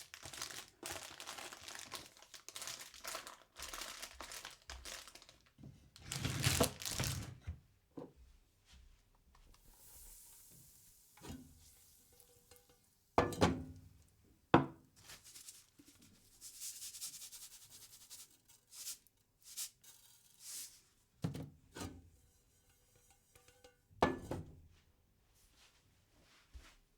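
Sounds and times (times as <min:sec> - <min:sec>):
eggs sizzling in a pan: 0:09.5 - 0:14.2
utensils knocking and scraping cookware: 0:21.8 - 0:24.6.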